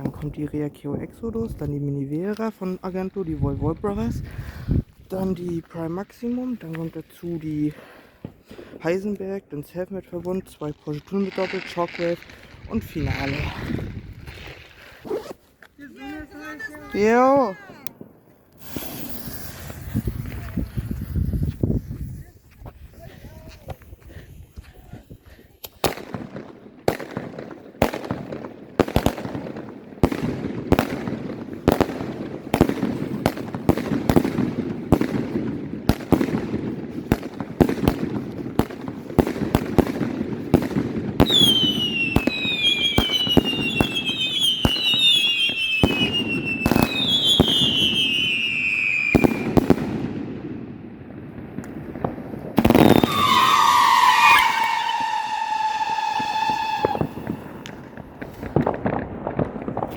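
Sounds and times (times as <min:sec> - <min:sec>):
falling firework whistles: 0:18.5 - 0:22.3, 0:41.2 - 0:49.6, 0:52.6 - 0:58.5
screaming firework whistle: 0:41.2 - 0:49.5, 0:52.7 - 0:57.6
firework battery bangs: 0:51.6 - 0:59.9.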